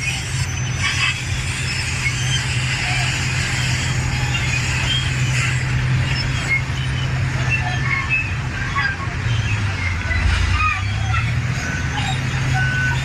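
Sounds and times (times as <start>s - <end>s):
bulldozer diesel engine running: 0.0s - 13.0s
high-pitched squeaks: 0.0s - 13.0s.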